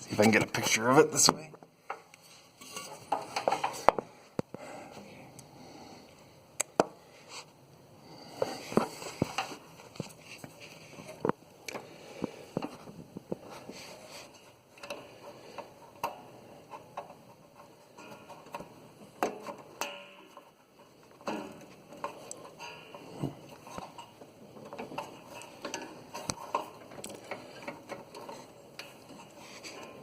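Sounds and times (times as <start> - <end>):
rustling: 8.3 - 30.0.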